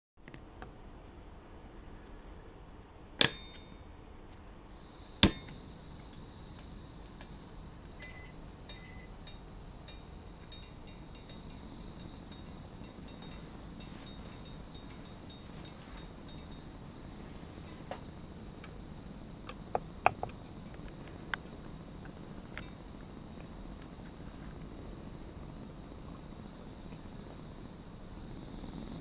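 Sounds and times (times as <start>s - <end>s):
gas stove igniter clicks: 3.2s - 3.7s, 5.2s - 7.4s, 19.4s - 21.4s
gas burner running: 4.7s - 29.0s.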